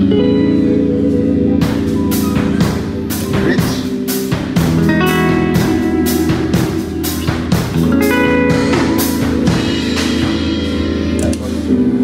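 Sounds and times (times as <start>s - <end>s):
drum kit playing: 0.0s - 12.0s
electric guitar through amp: 0.0s - 12.0s.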